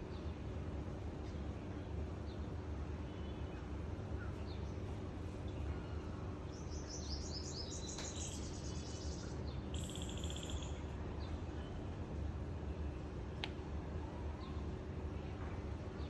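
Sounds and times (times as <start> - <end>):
small songbirds chirping: 6.4 - 11.7.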